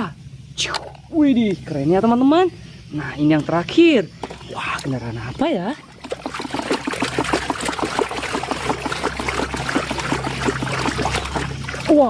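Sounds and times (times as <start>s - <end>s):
water trickling and splashing: 3.2s - 12.0s.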